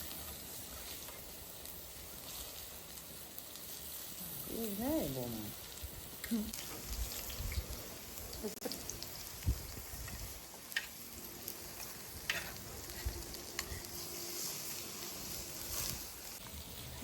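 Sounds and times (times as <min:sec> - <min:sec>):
food sizzling over wood fire: 0:00.0 - 0:17.0
fire pops and clicks: 0:05.7 - 0:14.0.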